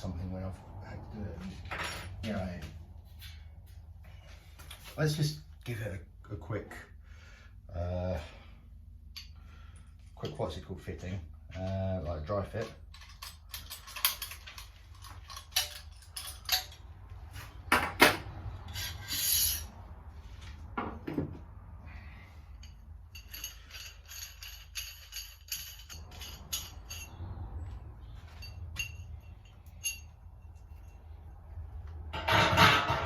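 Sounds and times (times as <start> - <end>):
metal clinks and scrapes: 1.4 - 5.0, 12.5 - 20.5, 22.2 - 33.0
ringing metallic jingle: 22.6 - 27.5, 28.2 - 31.3.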